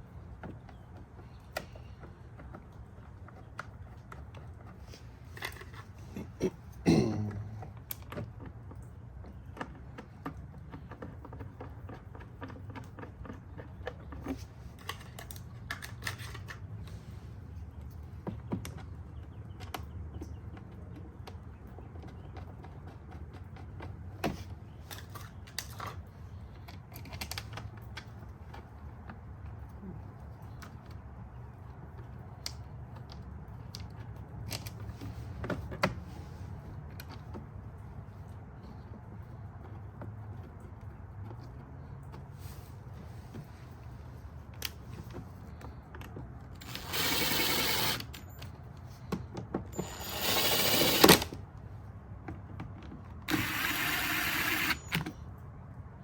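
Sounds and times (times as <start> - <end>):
small tools clicking and tapping: 7.3 - 17.0.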